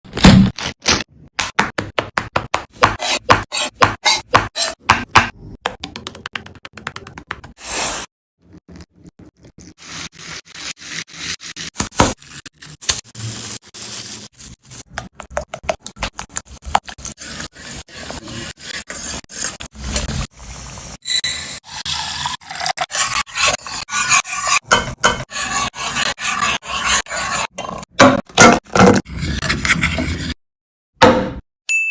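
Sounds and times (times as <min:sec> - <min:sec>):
kitchen scraping and rasping: 0:02.8 - 0:05.1, 0:07.6 - 0:30.4.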